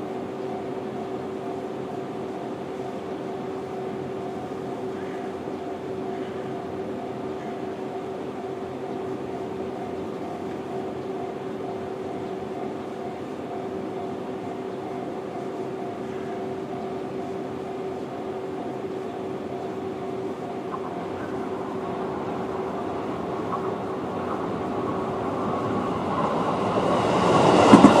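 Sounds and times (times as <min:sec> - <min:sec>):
electric train passing: 0:00.0 - 0:28.0
electronic level-crossing alarm: 0:00.0 - 0:28.0.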